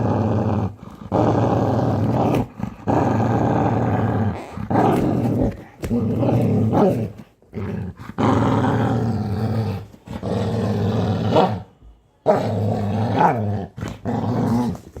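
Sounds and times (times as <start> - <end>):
dog growling: 0.0 - 15.0.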